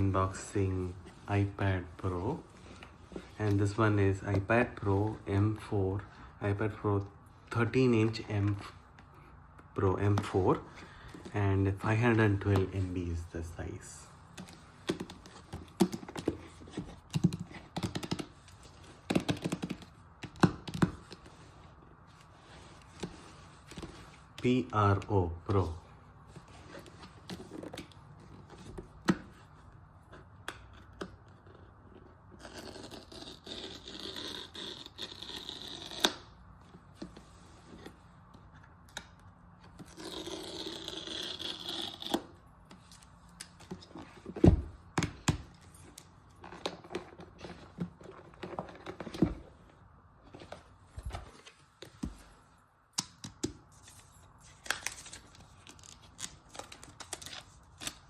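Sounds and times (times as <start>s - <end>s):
box clicks taps and scrapes: 14.3s - 21.3s
packaging being torn open: 54.5s - 58.0s.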